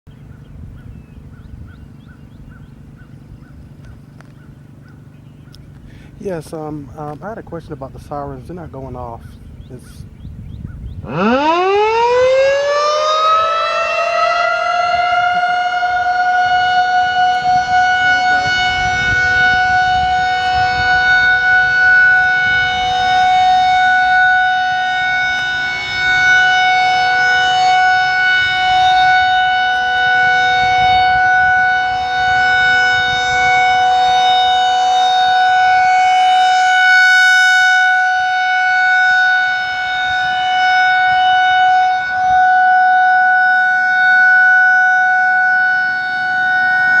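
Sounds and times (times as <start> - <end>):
outdoor warning siren steady tone: 10.7 - 47.0.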